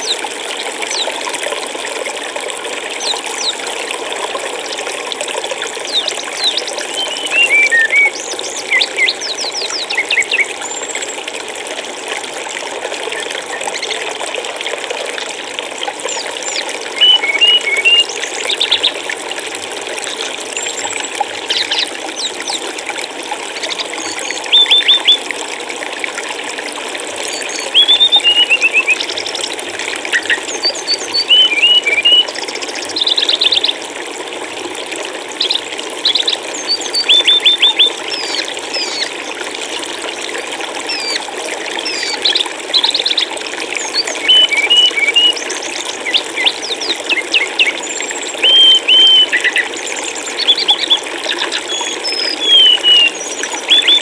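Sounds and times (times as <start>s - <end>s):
flowing water: 0.0s - 54.0s
songbirds chirping: 5.9s - 10.6s, 46.0s - 54.0s.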